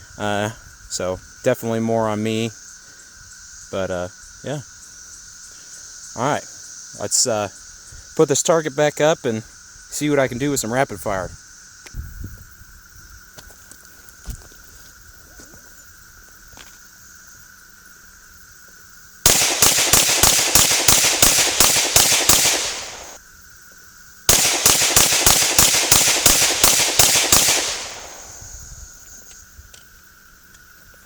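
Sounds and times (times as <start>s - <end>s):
pistol rapid fire: 19.3s - 23.2s, 24.3s - 28.4s.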